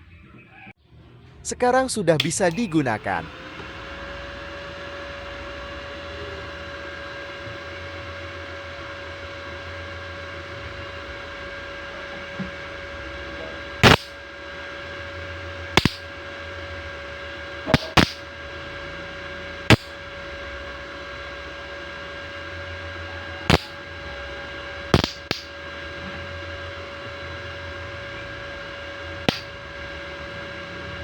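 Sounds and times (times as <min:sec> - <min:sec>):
welding machine humming: 0:02.2 - 0:31.0
sharp welding cracks: 0:13.8 - 0:14.2, 0:15.8 - 0:16.2, 0:17.6 - 0:18.3, 0:19.7 - 0:20.0, 0:23.5 - 0:23.8, 0:24.9 - 0:25.6, 0:29.2 - 0:29.6.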